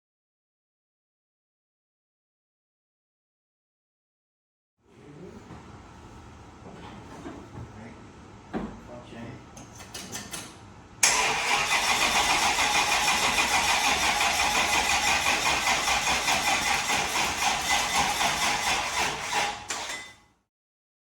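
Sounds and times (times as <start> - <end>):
car engine starting and running: 11.0 - 19.3.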